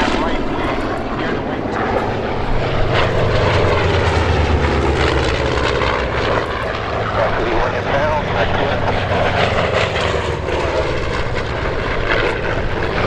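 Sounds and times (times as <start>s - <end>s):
propeller aircraft flying past: 0.0s - 13.0s.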